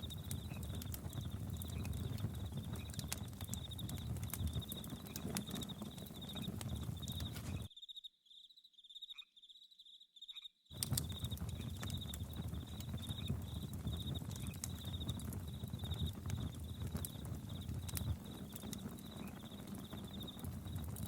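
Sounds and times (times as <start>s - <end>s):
campfire crackling: 0.0s - 7.7s, 10.7s - 21.0s
crickets chirping: 0.0s - 21.0s.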